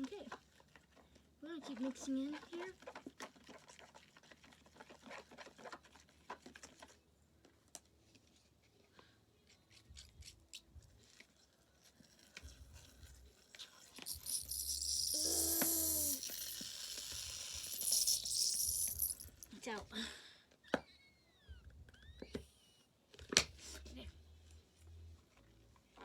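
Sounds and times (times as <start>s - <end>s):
slime being stirred: 0.0s - 7.1s, 11.0s - 19.5s.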